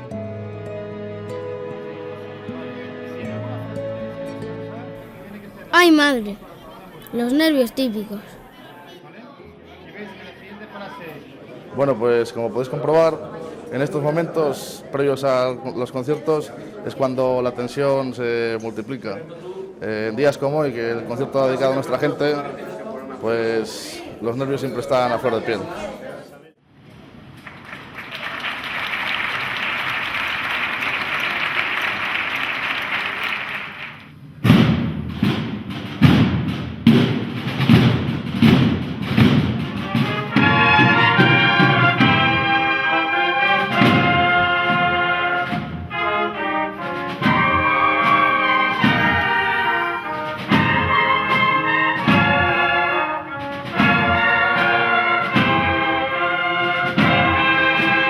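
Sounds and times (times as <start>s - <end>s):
audience applauding: 27.3s - 34.1s
drum strokes: 34.4s - 46.1s, 46.7s - 52.6s, 53.3s - 58.0s
cornets playing march melody: 39.8s - 58.0s.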